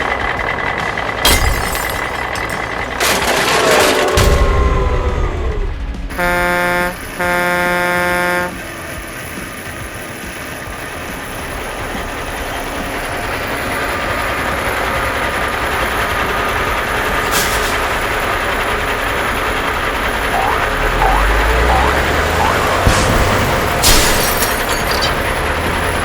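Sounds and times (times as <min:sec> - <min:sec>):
truck horn blasts: 0:06.1 - 0:08.8, 0:20.4 - 0:23.7
rushing mechanical noise: 0:19.4 - 0:26.0.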